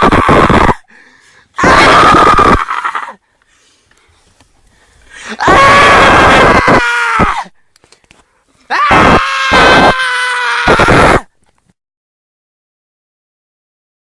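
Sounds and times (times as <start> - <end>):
person screaming: 0.0 - 0.8, 1.6 - 3.2, 5.3 - 7.5, 8.7 - 11.3.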